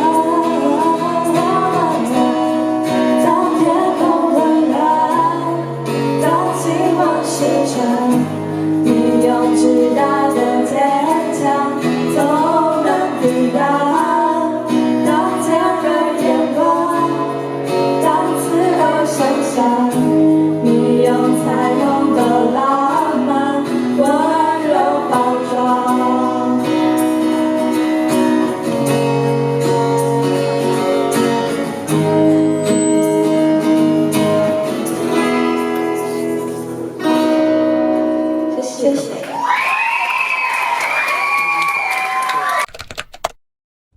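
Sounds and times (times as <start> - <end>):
song with guitar: 0.0 - 41.1.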